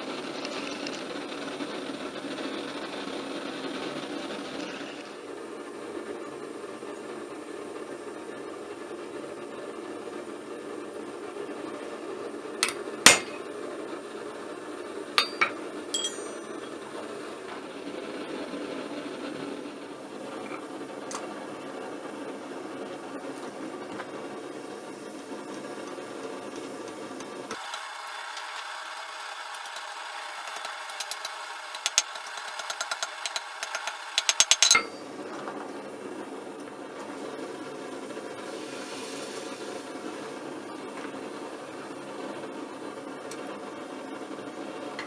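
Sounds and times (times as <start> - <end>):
hammer striking steel on anvil: 15.2 - 16.6
gas forge rushing: 27.5 - 34.8.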